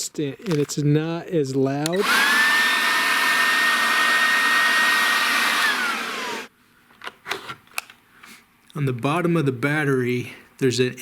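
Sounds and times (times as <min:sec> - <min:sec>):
leaf blower motor whine: 0:02.0 - 0:06.5.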